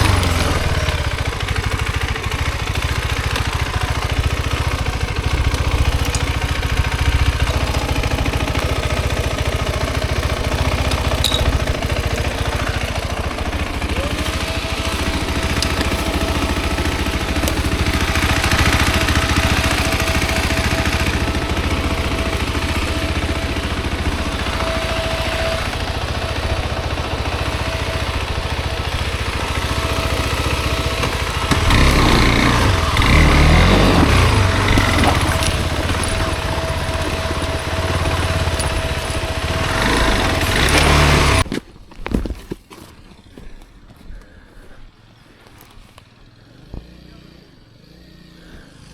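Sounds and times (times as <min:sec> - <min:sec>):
dirt bike engine running: 0:00.0 - 0:48.9.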